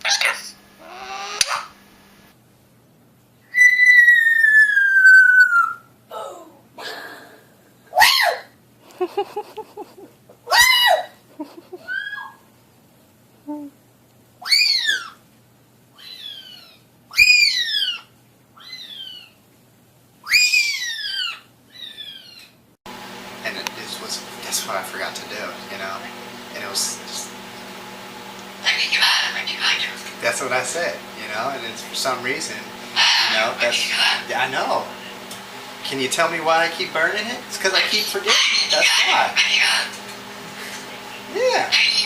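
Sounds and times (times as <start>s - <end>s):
parrot calls: 0.0s - 1.8s, 3.5s - 5.9s, 11.8s - 12.4s, 14.4s - 15.2s, 16.0s - 19.4s, 20.2s - 22.6s, 32.9s - 34.4s, 37.8s - 40.0s
parrot falling whistle: 3.5s - 5.8s.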